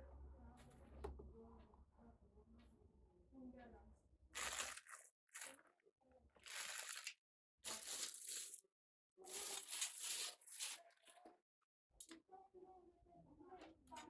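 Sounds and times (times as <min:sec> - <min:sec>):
packaging crinkling and rustling: 0:04.4 - 0:05.5, 0:06.5 - 0:07.1.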